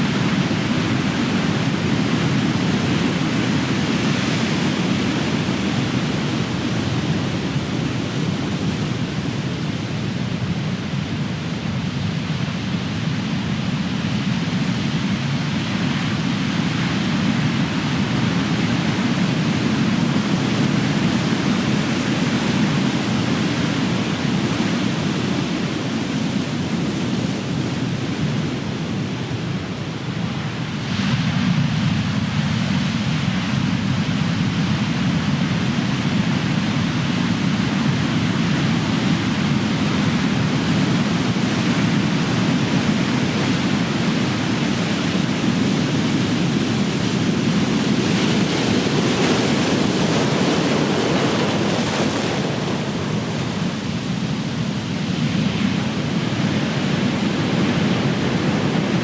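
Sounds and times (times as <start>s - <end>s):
ocean waves crashing: 39.2s - 59.0s.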